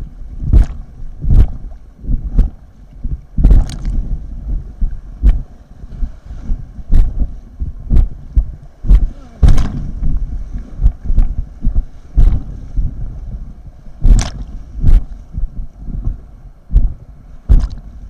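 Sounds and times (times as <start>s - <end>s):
river water rumbling: 0.0s - 18.0s
wind on microphone: 0.0s - 18.0s
sharp splash: 14.0s - 14.6s, 17.5s - 17.9s.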